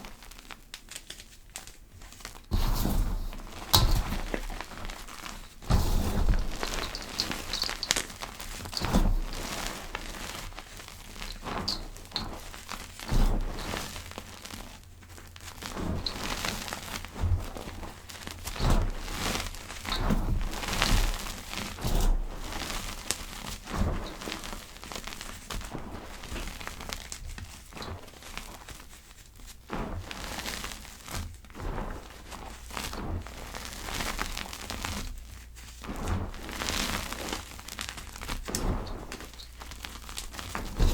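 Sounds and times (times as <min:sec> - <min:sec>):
powder crushing and crunching: 0:00.0 - 0:29.3, 0:30.1 - 0:40.9
muffled thumps: 0:02.5 - 0:10.1, 0:38.5 - 0:40.9.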